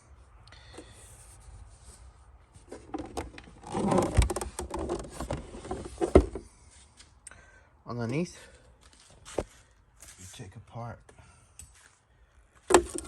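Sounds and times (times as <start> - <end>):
plastic clicks and scraping: 2.7 - 6.4.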